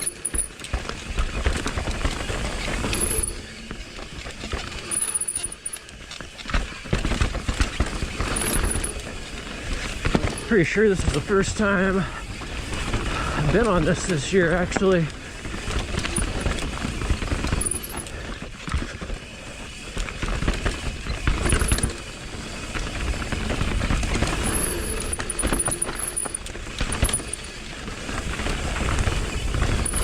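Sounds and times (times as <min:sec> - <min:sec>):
chain and frame rattling: 0:00.0 - 0:00.6, 0:02.2 - 0:03.4, 0:04.6 - 0:05.9, 0:08.2 - 0:09.2, 0:15.7 - 0:18.2, 0:21.3 - 0:22.0, 0:24.1 - 0:27.6, 0:29.6 - 0:30.0
bike tyres on dirt: 0:00.0 - 0:30.0.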